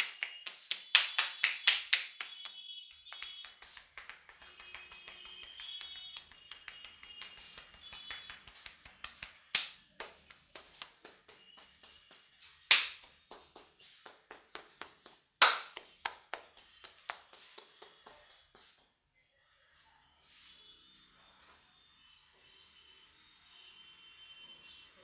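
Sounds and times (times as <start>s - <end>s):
hands tapping on a head: 0.0s - 2.3s, 3.1s - 18.8s
loud sharp slaps: 0.0s - 2.4s, 3.1s - 18.2s.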